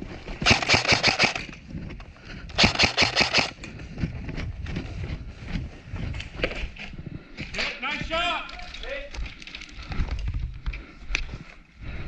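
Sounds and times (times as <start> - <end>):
airsoft rifle automatic bursts: 0.4 - 1.4, 2.6 - 3.6.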